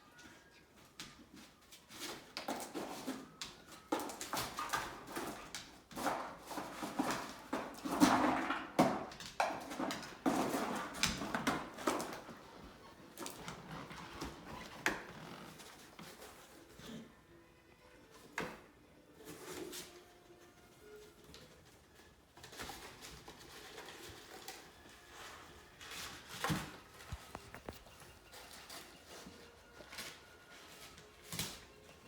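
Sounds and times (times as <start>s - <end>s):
dog chewing cardboard box: 2.1s - 16.7s, 22.4s - 32.0s.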